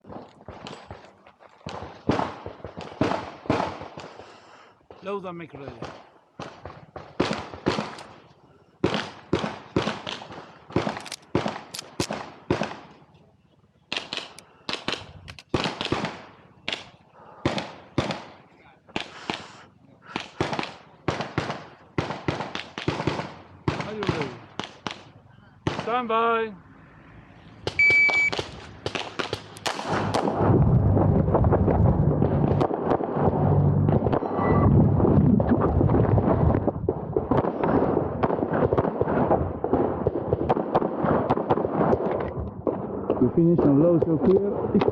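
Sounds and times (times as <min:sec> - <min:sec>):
short electronic beep: 0:27.8 - 0:28.3, 0:34.2 - 0:34.7
shot timer beep: 0:27.8 - 0:28.3
loud low rumble: 0:29.8 - 0:37.2.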